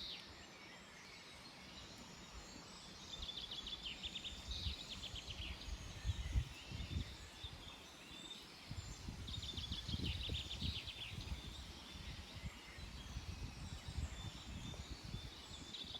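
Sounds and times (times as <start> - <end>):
songbirds chirping: 0.0 - 15.9.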